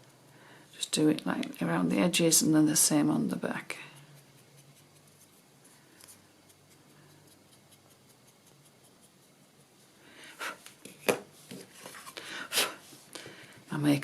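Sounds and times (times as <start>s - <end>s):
sponge rubbing and dabbing: 4.0s - 9.9s.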